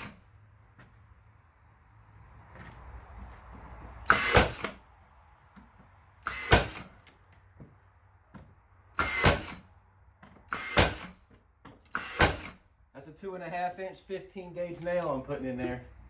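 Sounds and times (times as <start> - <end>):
nail gun shots: 4.0 - 4.8, 6.2 - 6.9, 9.0 - 9.6, 10.5 - 11.2, 11.9 - 12.6.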